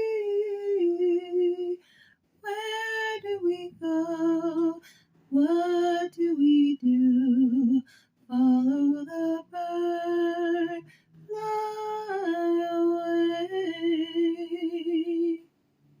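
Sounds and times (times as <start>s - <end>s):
woman singing unaccompanied: 0.0s - 1.8s, 2.4s - 15.5s.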